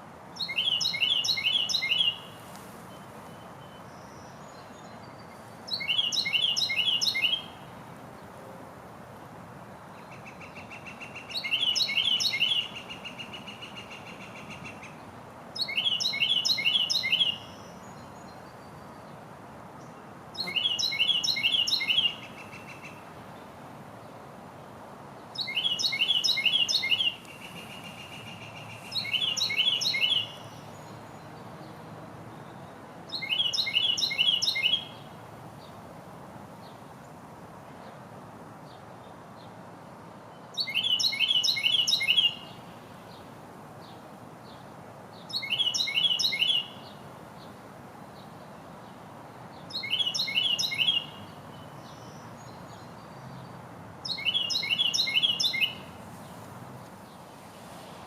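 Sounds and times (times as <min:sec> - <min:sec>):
faint outdoor background noise: 0:00.0 - 0:58.0
wren singing rolling phrases: 0:00.3 - 0:08.4, 0:09.7 - 0:35.8, 0:38.6 - 0:57.8.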